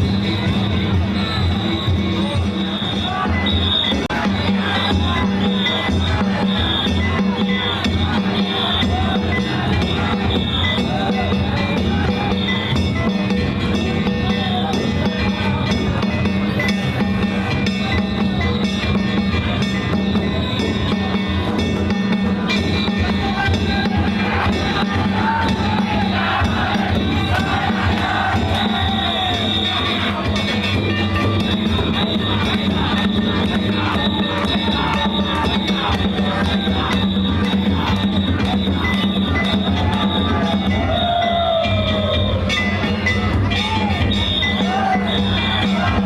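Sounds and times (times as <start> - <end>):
crowd voices: 0.0 - 46.0
taiko drums: 0.0 - 46.0.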